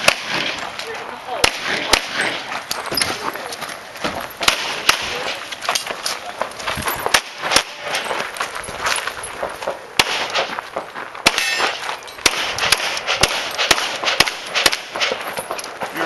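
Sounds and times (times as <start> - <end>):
handgun shots: 4.4 - 5.9, 7.1 - 8.0, 10.0 - 10.5, 11.2 - 15.3.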